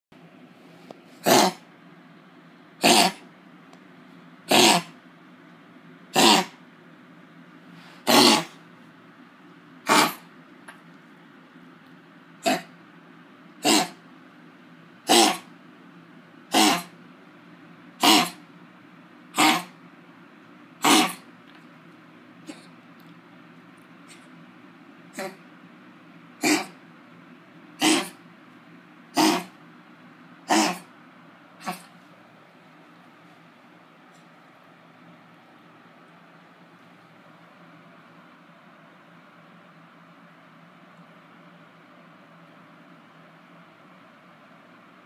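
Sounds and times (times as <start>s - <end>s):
dog coughing: 1.2s - 1.6s, 2.8s - 3.3s, 4.5s - 5.0s, 6.1s - 6.6s, 8.0s - 8.6s, 9.8s - 10.3s, 12.4s - 12.7s, 13.6s - 14.0s, 15.0s - 15.5s, 16.5s - 17.0s, 18.0s - 18.4s, 19.3s - 19.8s, 20.8s - 21.3s, 25.1s - 25.4s, 26.4s - 26.8s, 27.8s - 28.2s, 29.1s - 29.6s, 30.5s - 30.9s, 31.6s - 31.9s.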